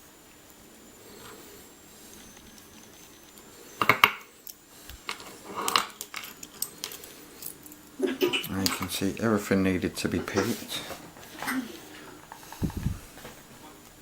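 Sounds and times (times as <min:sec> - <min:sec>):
small metal parts clinking: 0:02.1 - 0:09.1.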